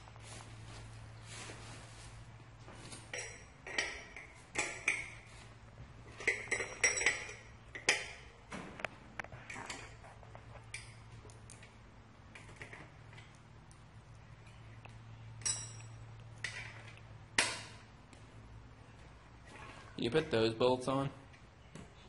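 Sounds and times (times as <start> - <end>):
steady low hum: 0.0 - 22.0
metal parts clinking: 15.4 - 17.7.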